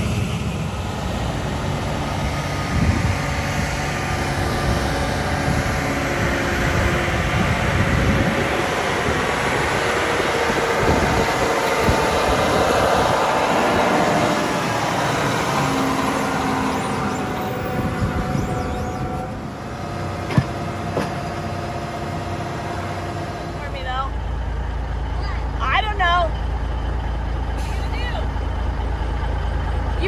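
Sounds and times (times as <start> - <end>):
mechanical roar: 0.0 - 20.2
engine drone: 0.0 - 30.0.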